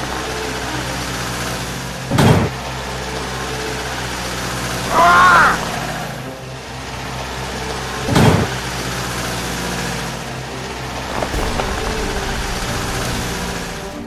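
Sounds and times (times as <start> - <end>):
vehicle engine idling: 0.0 - 14.0
short loud noise: 11.1 - 14.0.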